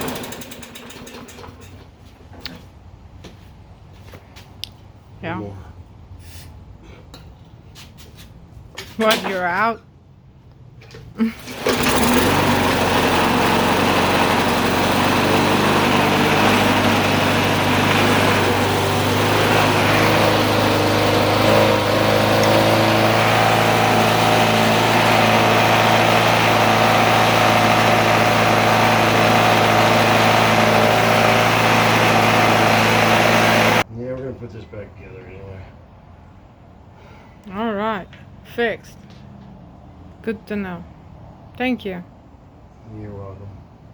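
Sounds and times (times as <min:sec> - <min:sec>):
lawn mower engine running: 0:00.0 - 0:01.9, 0:09.0 - 0:09.7, 0:10.8 - 0:33.9.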